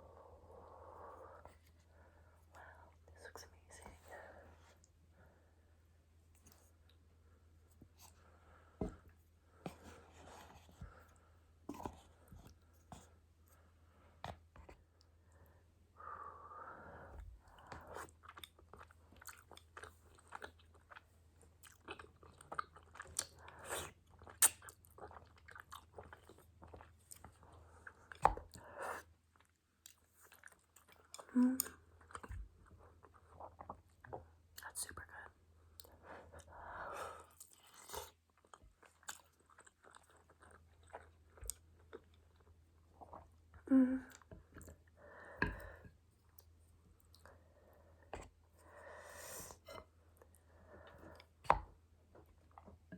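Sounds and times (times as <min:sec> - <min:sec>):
chewing and mouth smacks: 0:17.7 - 0:28.6, 0:37.3 - 0:43.4.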